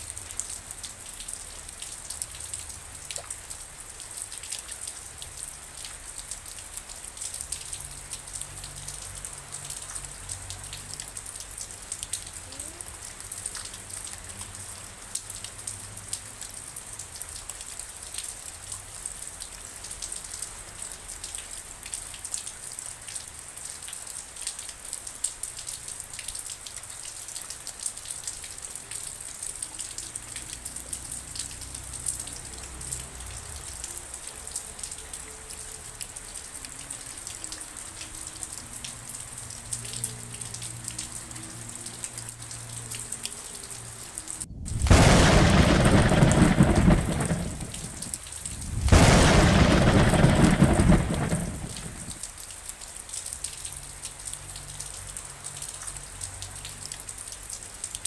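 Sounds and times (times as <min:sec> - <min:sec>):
steady rain patter: 0:00.0 - 0:58.0
faint low rumble: 0:44.0 - 0:52.3.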